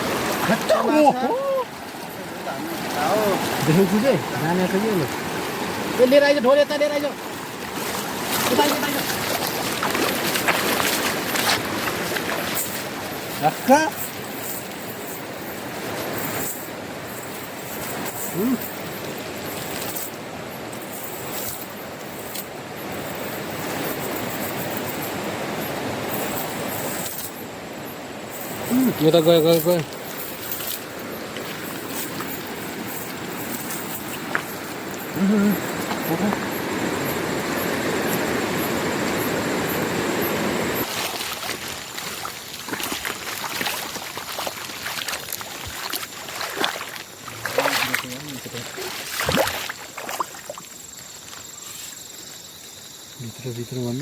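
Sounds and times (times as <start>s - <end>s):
river rushing: 0.0s - 52.3s
small splashes and knocks: 1.8s - 6.0s, 7.2s - 15.2s, 29.4s - 36.5s, 40.8s - 52.0s.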